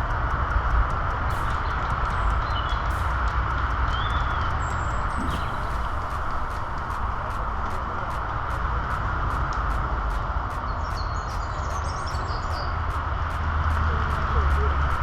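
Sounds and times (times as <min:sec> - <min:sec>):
outdoor low rumble: 0:00.0 - 0:15.0
birds twittering: 0:01.4 - 0:03.0, 0:03.9 - 0:07.0, 0:10.5 - 0:13.0.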